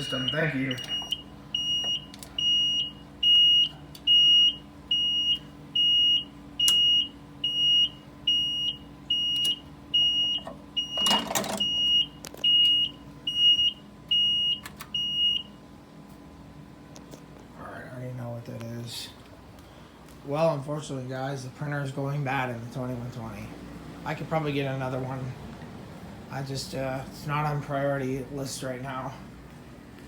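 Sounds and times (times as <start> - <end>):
high single-tone beeping: 0.0 - 2.0.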